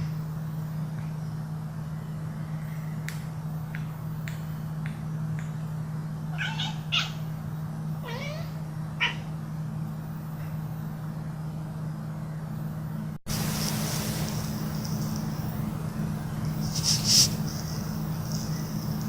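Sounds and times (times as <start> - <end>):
steady low hum: 0.0 - 19.0
cat meowing: 6.3 - 7.2, 8.0 - 9.3.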